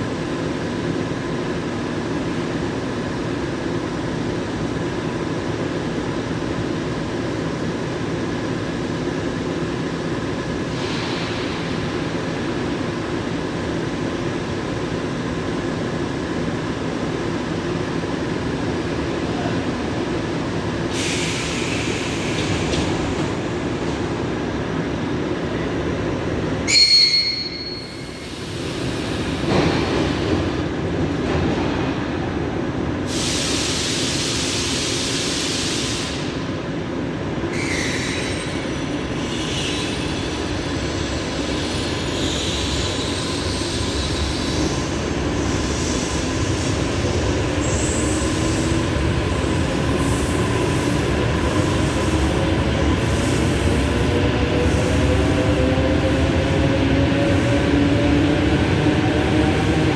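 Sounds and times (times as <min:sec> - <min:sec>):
train rail rumble: 0:04.1 - 0:59.9
hiss: 0:10.7 - 0:12.0, 0:20.9 - 0:23.0, 0:33.0 - 0:36.4.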